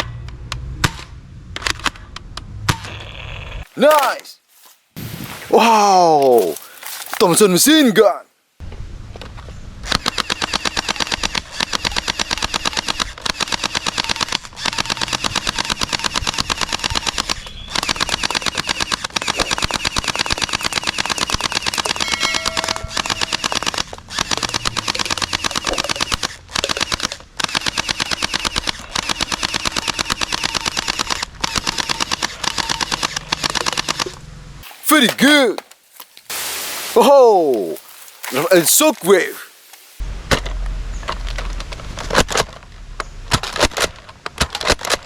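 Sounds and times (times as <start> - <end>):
toy machine gun rattling: 10.0 - 22.1, 22.8 - 34.1.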